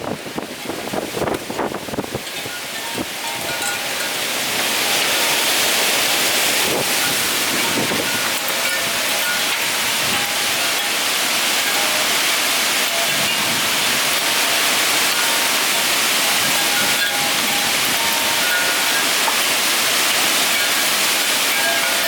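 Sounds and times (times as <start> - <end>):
storm wind roaring: 0.0 - 11.8.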